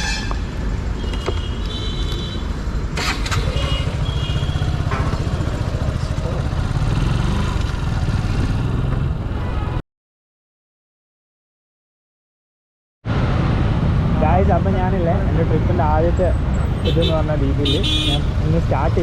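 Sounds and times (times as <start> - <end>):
vehicle engine running: 3.0 - 9.0.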